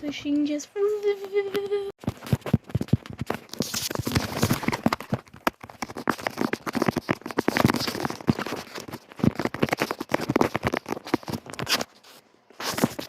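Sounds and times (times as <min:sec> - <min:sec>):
packaging rustling: 0:02.0 - 0:13.0.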